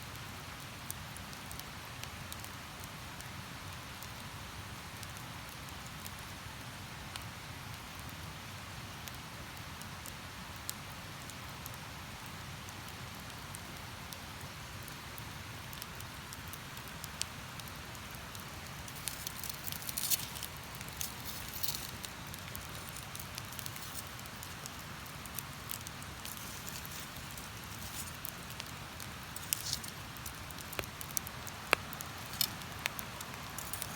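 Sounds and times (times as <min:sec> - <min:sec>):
campfire crackling and popping: 0:00.2 - 0:02.9, 0:11.7 - 0:33.9.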